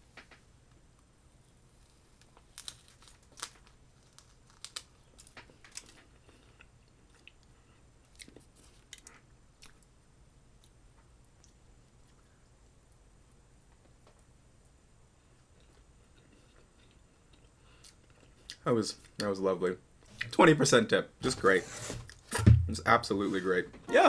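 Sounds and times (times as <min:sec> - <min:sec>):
small sharp crunches: 0:02.3 - 0:06.1
chewing cupcake: 0:06.0 - 0:10.0, 0:15.2 - 0:19.3.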